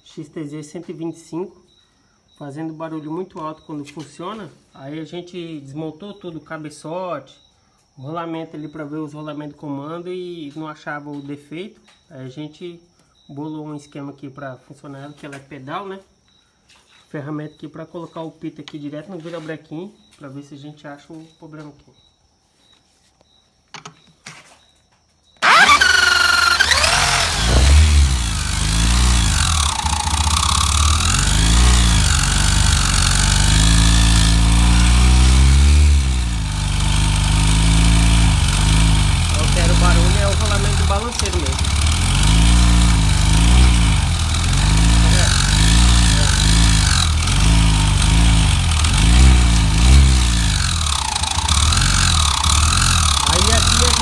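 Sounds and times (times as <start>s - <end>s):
motorcycle engine starting and revving: 25.4s - 54.0s.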